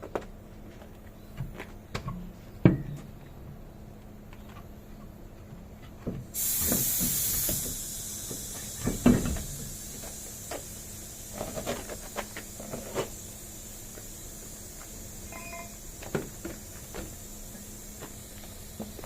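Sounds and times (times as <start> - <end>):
compressed air hissing: 6.3 - 19.0.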